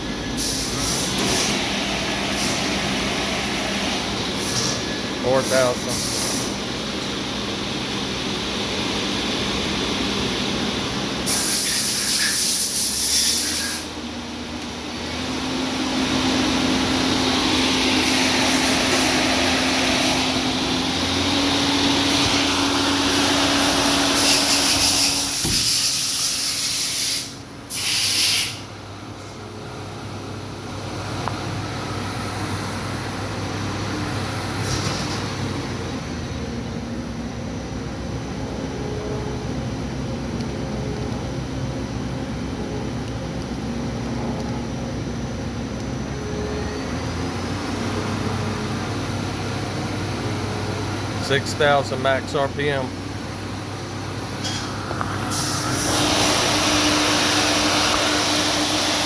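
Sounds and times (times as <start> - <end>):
lathe spindle whine: 1.5 - 25.4, 35.4 - 59.0.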